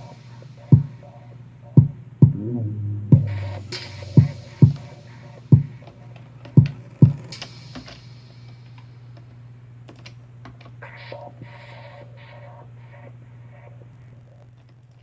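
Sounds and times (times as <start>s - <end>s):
deep thumps: 2.2s - 4.8s
steady low hum: 2.2s - 5.3s.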